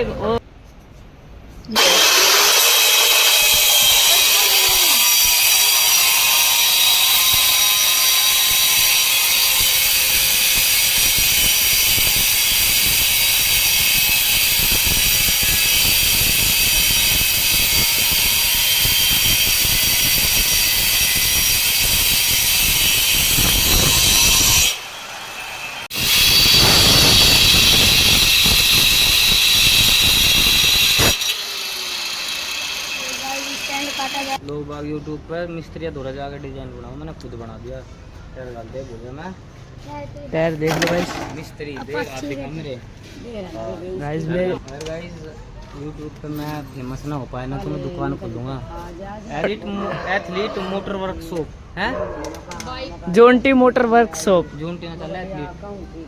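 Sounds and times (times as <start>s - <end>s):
power tool whining: 1.7s - 34.4s.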